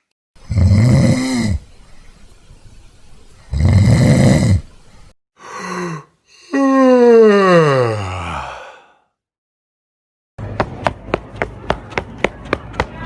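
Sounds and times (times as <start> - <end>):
person snoring: 0.4 - 1.6, 3.5 - 4.7, 5.4 - 9.1
voice-like moan: 5.4 - 9.0.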